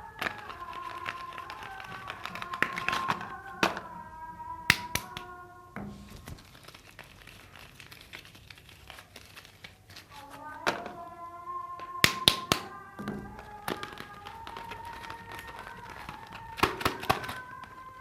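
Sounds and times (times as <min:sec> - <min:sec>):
wrapper crinkling: 0:00.0 - 0:18.0
taps and clicks: 0:04.7 - 0:05.3, 0:11.8 - 0:17.7.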